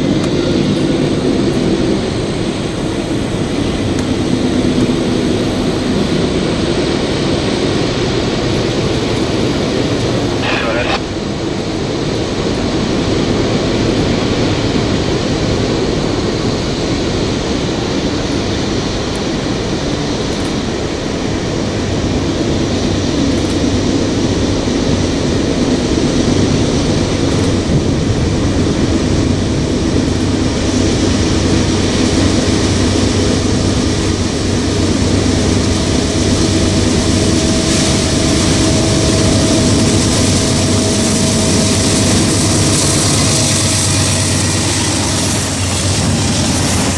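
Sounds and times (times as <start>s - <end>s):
freight train rolling on rails: 0.0s - 46.9s
steady tone: 9.6s - 11.2s, 34.4s - 46.9s
deep engine hum: 21.9s - 46.9s.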